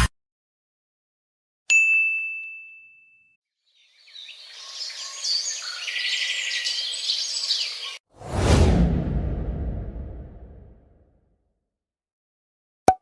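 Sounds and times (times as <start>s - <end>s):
birds chirping: 3.7s - 8.0s.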